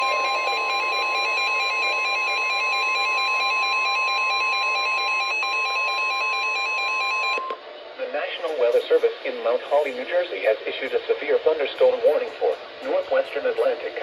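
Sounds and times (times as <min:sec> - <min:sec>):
high-pitched alarm tone: 0:00.0 - 0:07.6.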